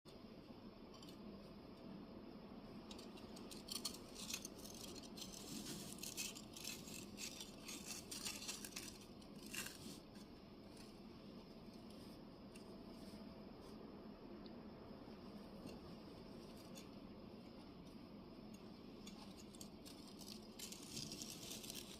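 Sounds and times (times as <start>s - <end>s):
faint steady background noise: 0.1s - 21.9s
clay tablets clicking and rattling: 19.1s - 21.9s.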